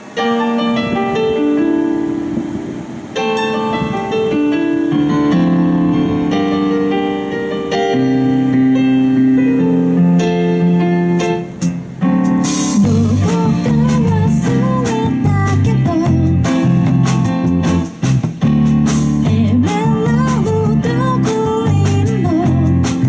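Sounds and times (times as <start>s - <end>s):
wavering melody line: 0.0s - 16.9s
bass: 0.0s - 23.0s
electric keyboard chords: 0.0s - 23.0s
drums: 10.2s - 23.0s.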